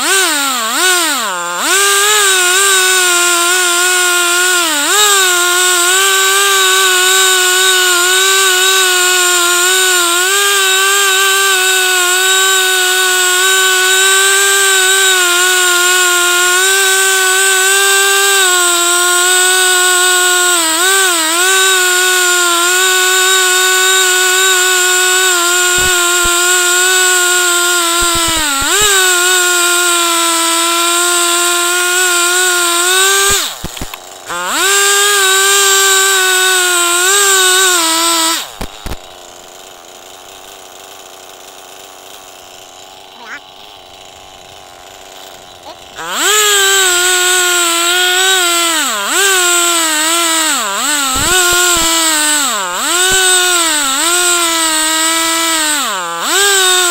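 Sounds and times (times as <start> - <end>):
chainsaw cutting a log: 0.0 - 56.9.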